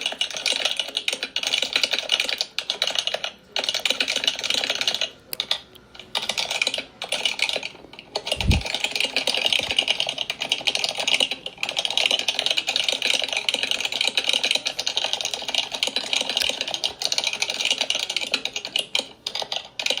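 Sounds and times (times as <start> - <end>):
fast typing on keyboard: 0.0 - 20.0.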